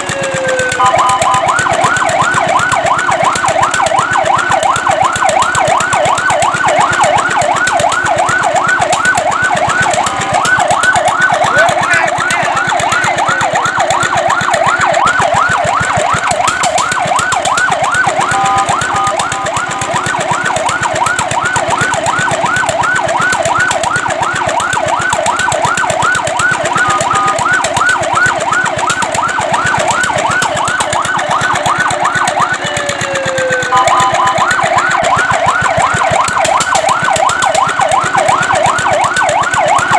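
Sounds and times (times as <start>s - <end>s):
fire truck siren yelp: 0.0s - 39.9s
slow falling siren sweep: 0.0s - 39.9s
two-note tones: 0.8s - 1.6s, 18.2s - 20.0s, 33.7s - 34.6s.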